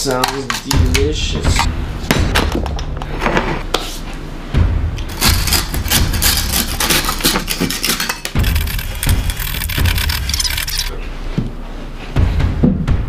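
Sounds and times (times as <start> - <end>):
background music: 0.0 - 13.0
knife cutting crunchy treat: 5.1 - 10.9.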